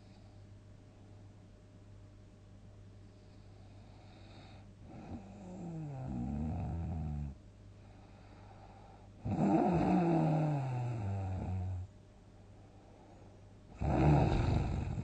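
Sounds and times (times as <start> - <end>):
person snoring: 4.9 - 7.4, 9.2 - 11.9, 13.8 - 15.0.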